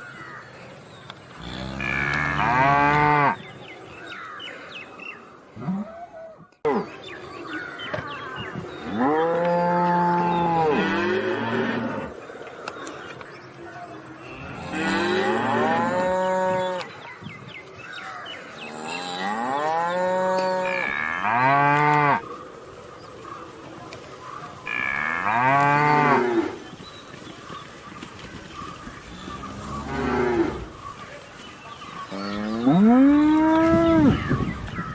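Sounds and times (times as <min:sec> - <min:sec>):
cow mooing: 0:01.4 - 0:03.4.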